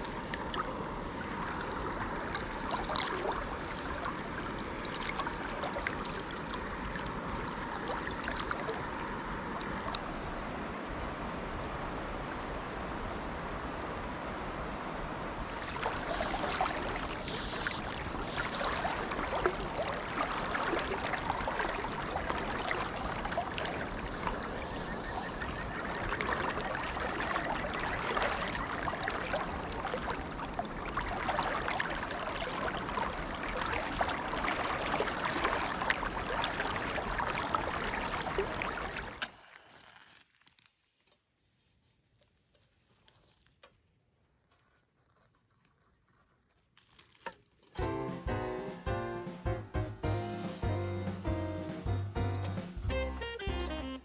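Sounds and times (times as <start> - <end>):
mountain stream water rushing: 0.0 - 11.8, 12.4 - 39.2.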